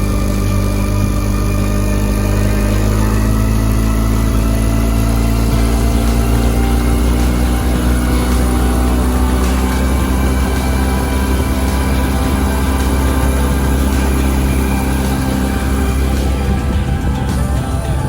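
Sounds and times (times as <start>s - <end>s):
outboard motor misfiring: 0.0s - 18.0s.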